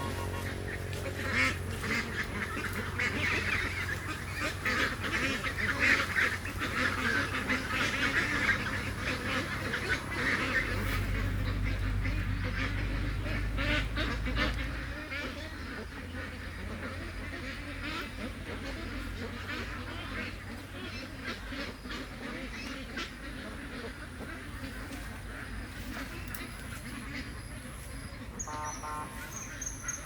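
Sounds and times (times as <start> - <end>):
ducks quacking: 0.0 - 30.0.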